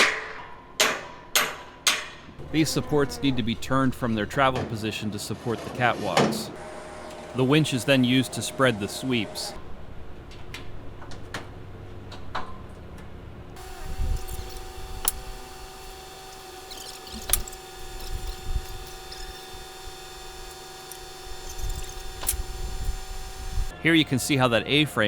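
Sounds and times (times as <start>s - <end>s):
winch humming: 6.5s - 9.6s, 13.6s - 23.8s.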